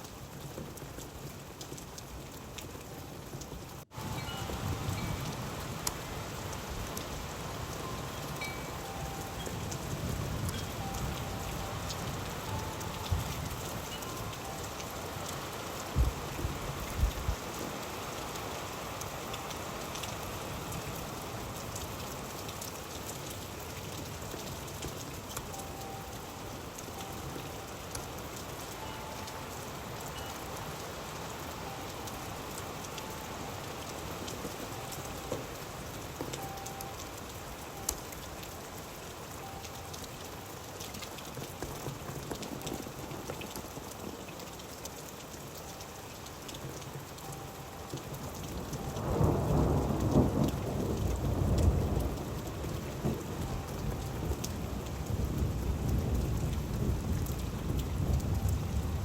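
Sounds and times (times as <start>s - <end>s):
steady rain falling: 0.0s - 59.0s.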